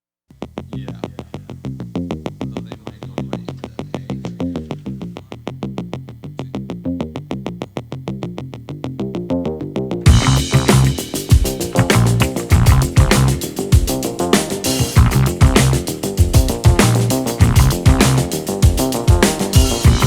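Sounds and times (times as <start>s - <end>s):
electronic music beat: 10.1s - 20.0s
fast synthesizer notes: 10.1s - 20.0s.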